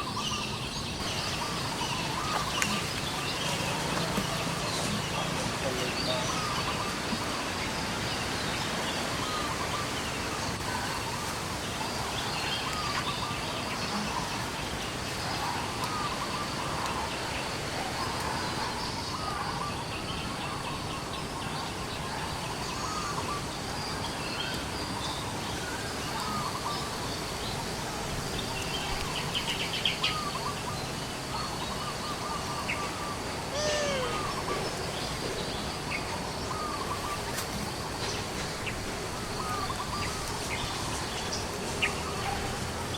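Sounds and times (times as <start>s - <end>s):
steady background hiss: 0.0s - 42.9s
animal call sweeping down: 33.5s - 34.6s
short chirping animal calls: 33.5s - 34.7s.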